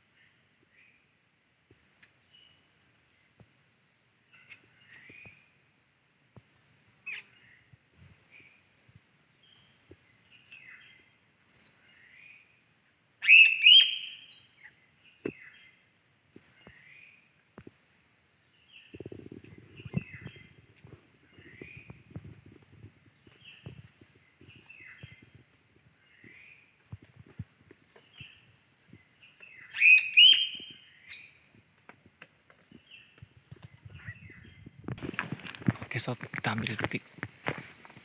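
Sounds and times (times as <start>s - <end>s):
small birds chirping: 1.7s - 3.4s, 4.2s - 5.6s, 6.3s - 38.0s
low scuffing noise: 34.9s - 38.0s.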